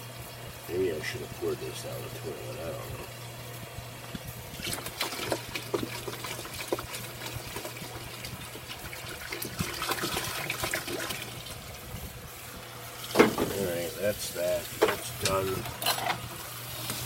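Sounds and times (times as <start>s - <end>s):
milk splatting and glugging: 4.5s - 11.6s
tap running into sink: 13.0s - 13.6s.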